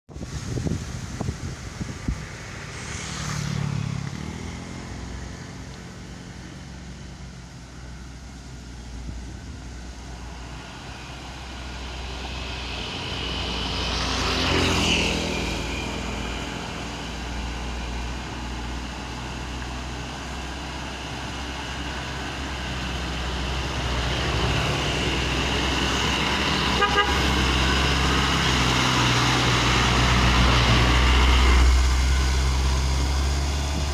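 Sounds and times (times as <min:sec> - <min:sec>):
trucks driving past: 0:00.1 - 0:33.9
horn toots: 0:26.6 - 0:27.8.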